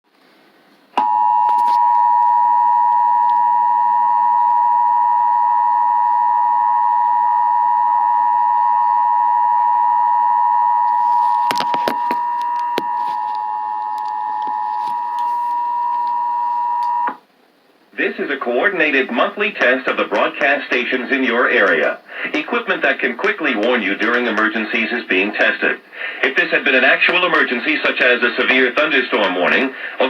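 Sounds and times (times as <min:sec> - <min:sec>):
two-tone alarm signal: 0:01.0 - 0:17.2.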